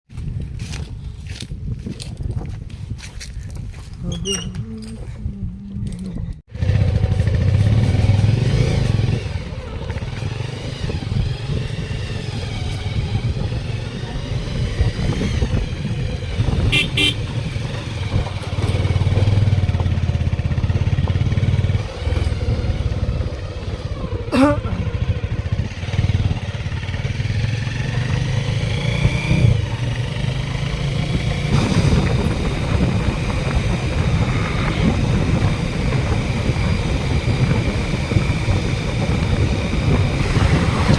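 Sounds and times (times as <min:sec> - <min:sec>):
wind and road noise: 0:00.0 - 0:40.9
motorcycle engine running: 0:05.4 - 0:40.9
vehicle horn toot: 0:16.6 - 0:17.3.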